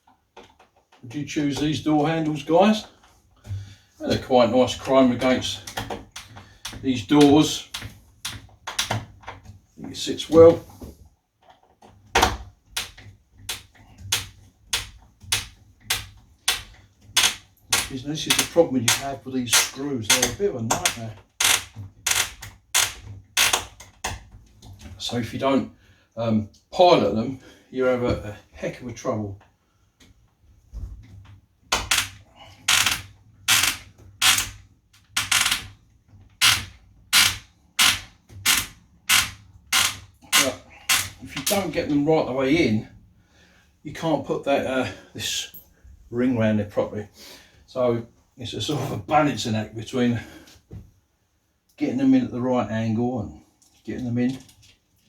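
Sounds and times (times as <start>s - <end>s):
screwdriver grating screws: 15.9s - 23.7s, 31.9s - 34.6s, 35.2s - 35.6s, 36.4s - 41.2s.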